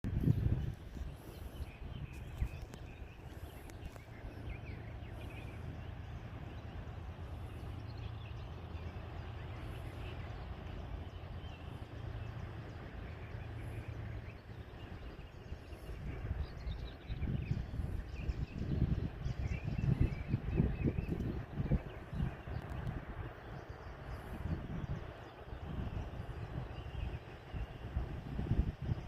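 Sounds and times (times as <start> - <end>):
boat diesel engine droning: 3.0 - 18.0.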